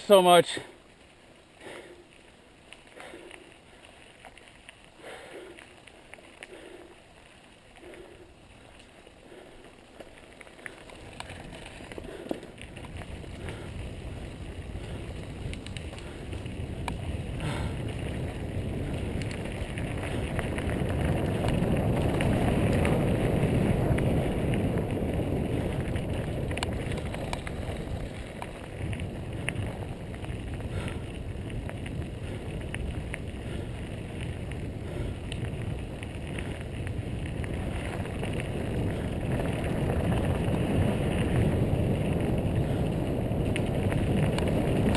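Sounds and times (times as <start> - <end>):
bike tyres rumbling on dirt: 0.0 - 44.9
wind rushing over microphone: 11.0 - 44.9.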